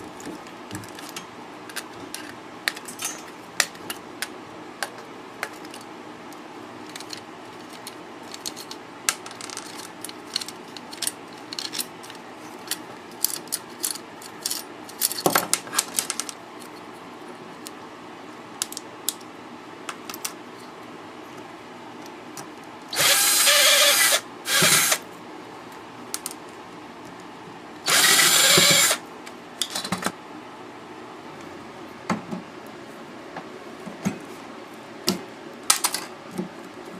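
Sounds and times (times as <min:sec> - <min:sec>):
small metal clicks and clatter: 0:06.8 - 0:16.8
power drill bursts: 0:22.9 - 0:25.0, 0:27.9 - 0:29.0.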